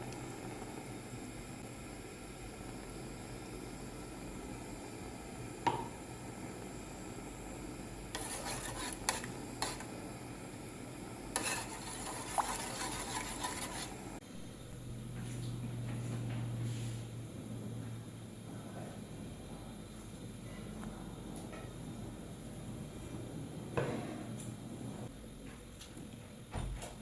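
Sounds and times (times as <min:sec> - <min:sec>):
utensil stirring and scraping: 0:08.1 - 0:10.0, 0:11.3 - 0:14.2.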